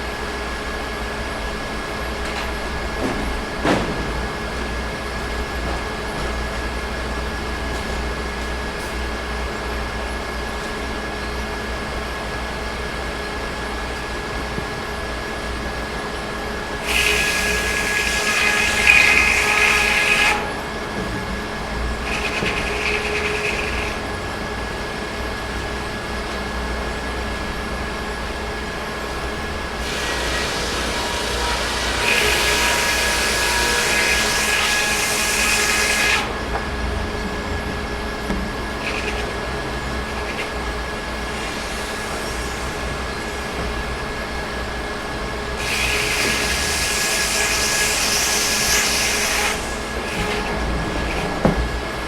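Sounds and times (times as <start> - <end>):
sawmill humming: 0.0 - 52.0
saw cutting wood: 16.7 - 25.2, 29.8 - 36.4, 38.1 - 43.6, 45.6 - 52.0.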